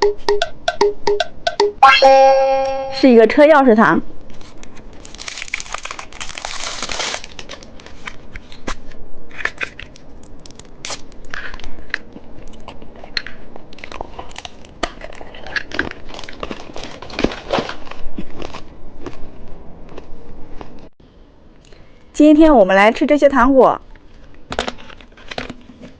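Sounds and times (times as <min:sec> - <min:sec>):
plastic wrapping rustling: 0:04.4 - 0:08.8, 0:13.8 - 0:18.6
plastic crinkling and clicks: 0:09.4 - 0:17.8.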